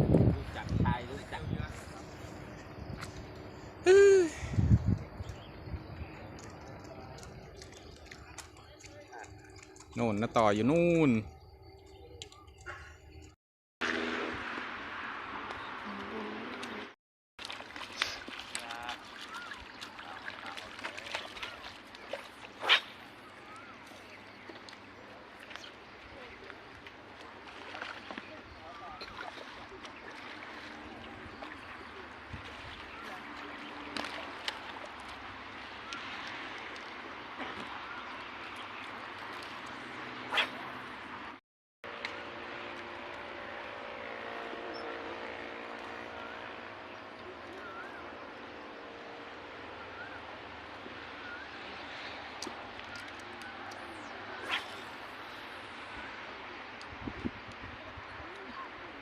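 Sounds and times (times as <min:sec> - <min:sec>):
dog barking: 0:40.3 - 0:40.7
faint rising and falling calls: 0:46.1 - 0:56.7.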